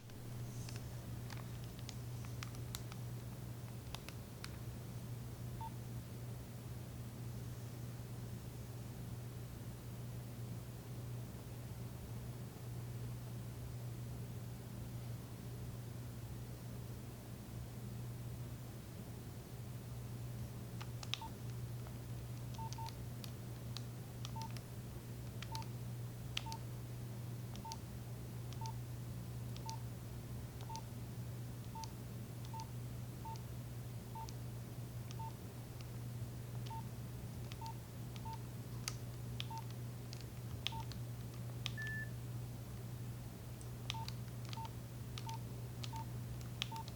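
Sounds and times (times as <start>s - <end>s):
steady low hum: 0.0s - 46.9s
phone keypad beeps: 22.6s - 23.0s, 24.4s - 24.6s, 29.6s - 29.8s, 30.6s - 30.9s, 31.7s - 31.9s, 32.5s - 33.4s, 35.2s - 35.4s, 37.5s - 38.4s, 39.5s - 39.7s, 40.7s - 41.0s, 41.7s - 42.1s, 43.9s - 46.1s, 46.7s - 46.9s.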